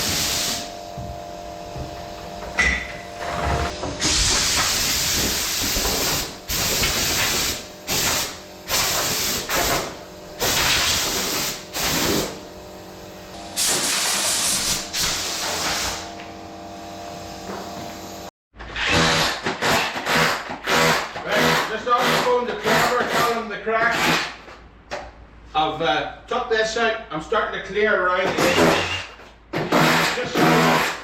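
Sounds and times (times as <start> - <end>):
compressed air hissing blasts: 0.0 - 0.7, 4.0 - 12.4, 13.6 - 16.1.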